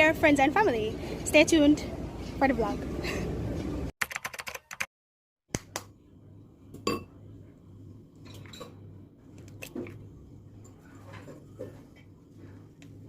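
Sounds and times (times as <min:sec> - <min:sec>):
low steady hum: 0:05.6 - 0:13.0.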